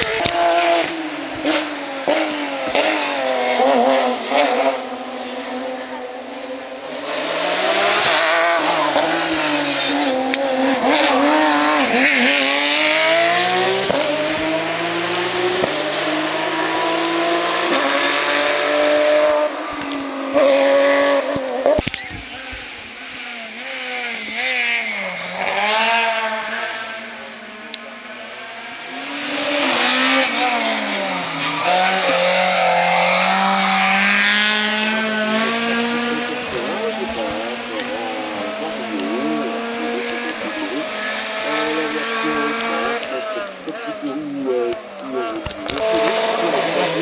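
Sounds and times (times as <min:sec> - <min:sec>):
race car engines at full throttle: 0:00.0 - 0:47.0.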